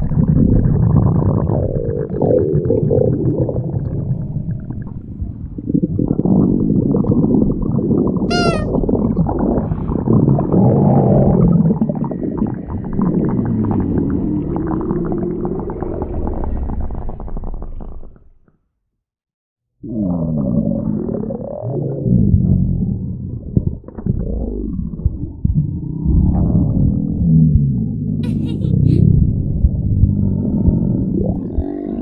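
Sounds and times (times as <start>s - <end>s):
stomach growling: 0.0s - 5.0s, 19.8s - 27.8s, 28.8s - 32.0s
brief high squeak: 8.3s - 8.7s.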